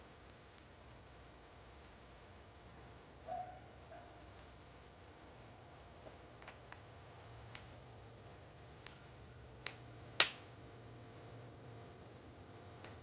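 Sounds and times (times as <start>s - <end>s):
clicks and taps of small objects: 6.4s - 6.8s.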